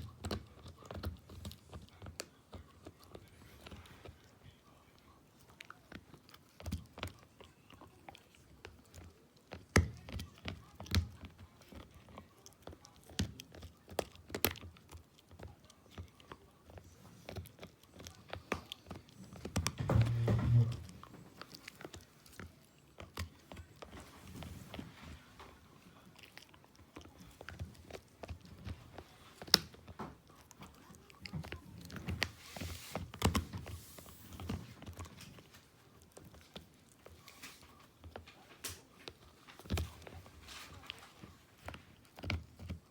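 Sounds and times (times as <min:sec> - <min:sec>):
dog gnawing on hard chew: 0:00.0 - 0:42.9.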